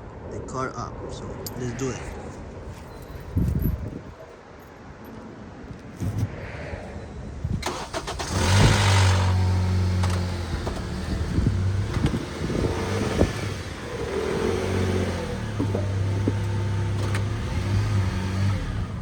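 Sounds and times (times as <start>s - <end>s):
car engine cranking: 7.6s - 19.0s
car engine idling: 9.0s - 19.0s.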